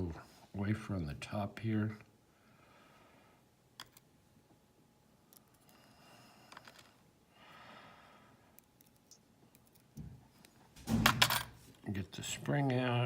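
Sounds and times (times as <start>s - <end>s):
soft breathing: 2.3s - 3.6s, 5.4s - 8.7s.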